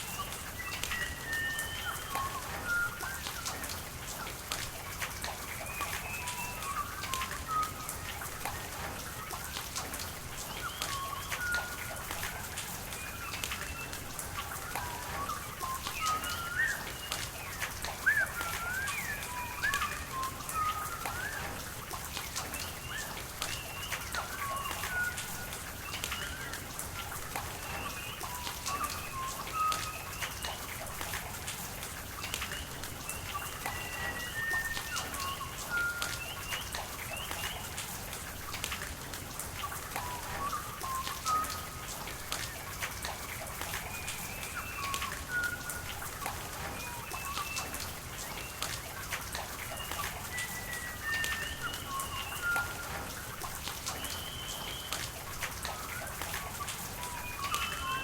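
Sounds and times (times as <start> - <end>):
rain falling: 0.0 - 58.0
birds chirping: 10.4 - 30.8, 43.4 - 58.0.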